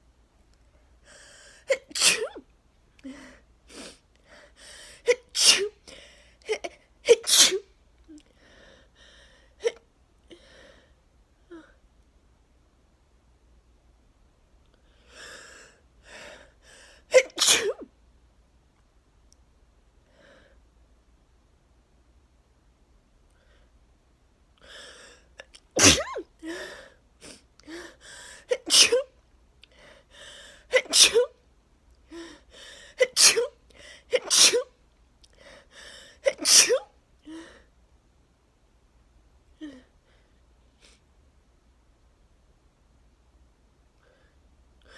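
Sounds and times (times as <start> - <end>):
breathing: 1.0 - 1.7, 4.2 - 5.1, 5.9 - 6.4, 8.3 - 9.6, 10.3 - 11.0, 24.6 - 25.3, 27.6 - 28.5, 29.7 - 30.7, 32.1 - 33.0, 33.7 - 34.1, 35.3 - 36.2, 44.0 - 44.9
noisy in-breath: 1.0 - 1.7, 3.0 - 5.1, 26.5 - 28.5, 29.7 - 30.7, 32.1 - 33.0, 35.3 - 36.2
woman sneezing: 1.7 - 2.4, 5.1 - 5.8, 6.5 - 7.7, 17.1 - 17.8, 25.8 - 26.3, 28.5 - 29.1, 30.7 - 31.3, 33.0 - 34.7, 36.2 - 36.9.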